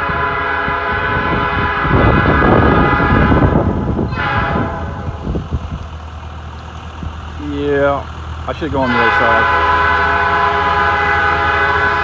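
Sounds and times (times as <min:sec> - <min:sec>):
locomotive air horn blasts: 0:00.0 - 0:05.8, 0:08.5 - 0:12.0
locomotive rumble passing: 0:00.0 - 0:12.0.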